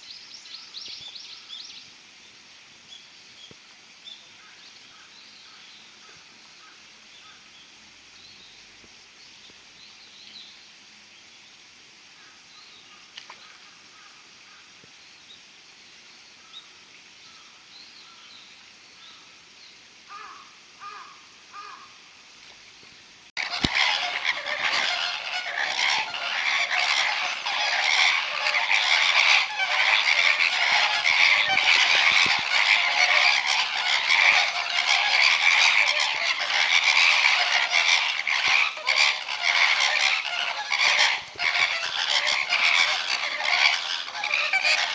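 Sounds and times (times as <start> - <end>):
flamingos calling: 23.4 - 44.9.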